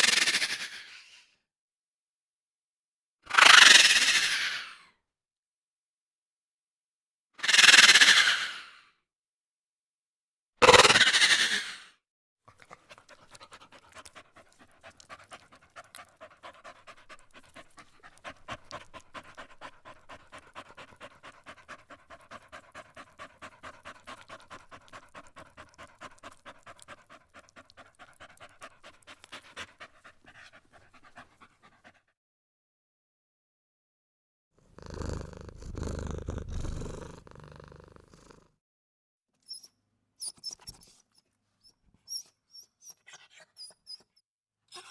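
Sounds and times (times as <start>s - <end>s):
dog panting: 12.5s - 32.2s, 40.3s - 44.2s.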